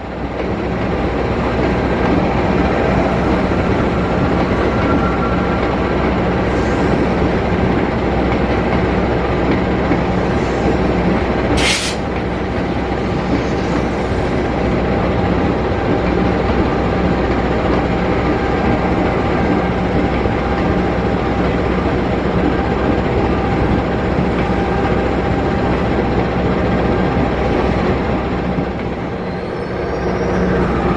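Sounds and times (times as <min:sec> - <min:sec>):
locomotive diesel engine running: 0:00.0 - 0:30.9
brief hiss: 0:11.6 - 0:12.0.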